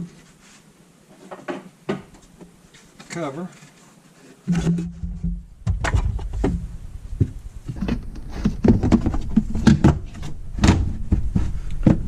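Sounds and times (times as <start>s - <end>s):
low hum: 4.8s - 12.0s
plastic trim rubbing and scraping: 7.7s - 12.0s.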